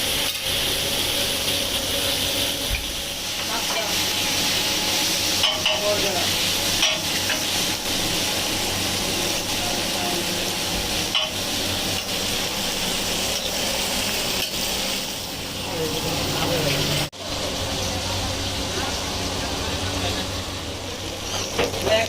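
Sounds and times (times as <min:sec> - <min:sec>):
food sizzling in oil: 0:00.0 - 0:22.0.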